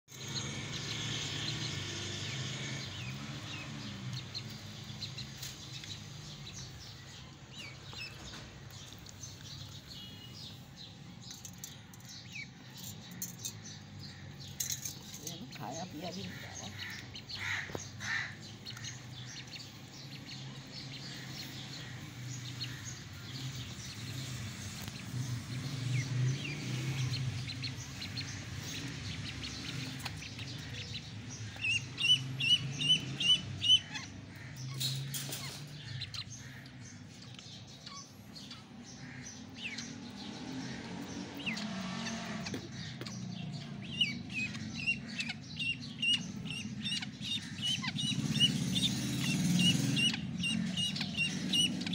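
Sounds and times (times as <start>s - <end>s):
ducklings peeping: 15.2s - 51.9s.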